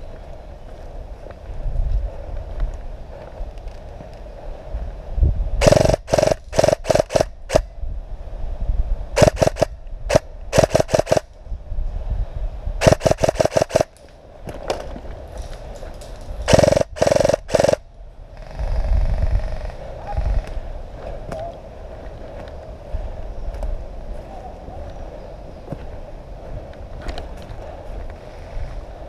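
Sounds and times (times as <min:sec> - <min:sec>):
airsoft gun rapid shots: 0:05.6 - 0:07.7, 0:09.2 - 0:11.3, 0:12.8 - 0:13.9, 0:16.5 - 0:17.8
gearbox motor whir: 0:16.5 - 0:17.8.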